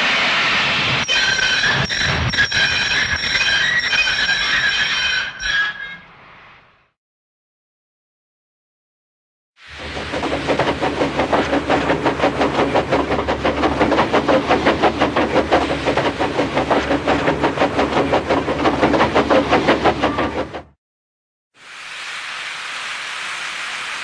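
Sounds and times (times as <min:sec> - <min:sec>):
train running: 0:00.0 - 0:06.1, 0:09.6 - 0:20.8.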